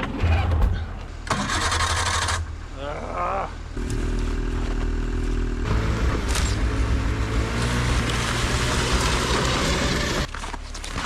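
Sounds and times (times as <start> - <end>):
small truck engine running: 3.8 - 10.3.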